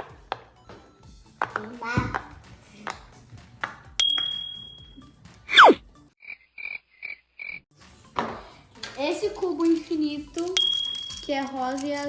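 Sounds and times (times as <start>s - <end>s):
click with high ding: 4.0s - 5.0s
short high blips: 5.5s - 5.8s.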